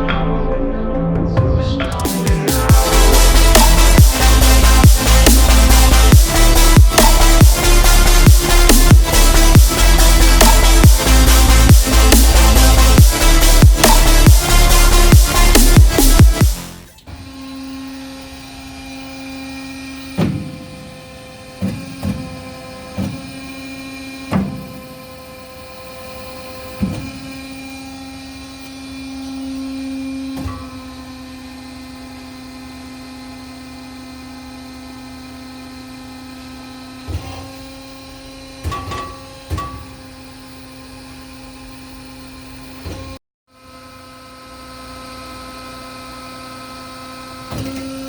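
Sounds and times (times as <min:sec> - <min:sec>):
bandsaw electric hum: 0:01.9 - 0:48.0
loud machine clunks: 0:20.1 - 0:25.0, 0:26.5 - 0:27.7, 0:37.0 - 0:40.2.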